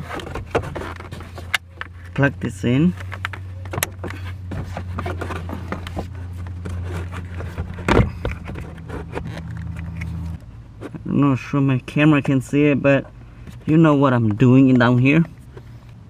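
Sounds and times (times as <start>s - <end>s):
steady low hum: 0.0s - 16.0s
clicks and scrapes of hands fitting parts: 2.9s - 11.0s.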